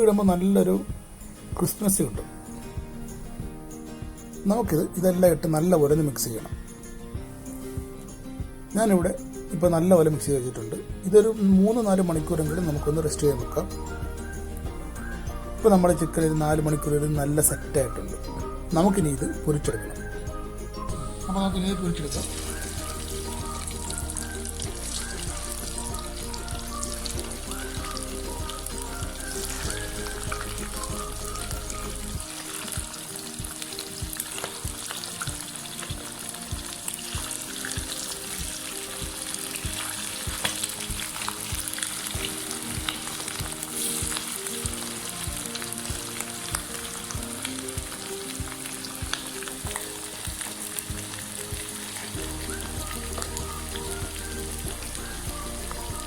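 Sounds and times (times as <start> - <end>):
background music: 0.0 - 56.0
chicken deep-frying in oil: 21.4 - 55.8.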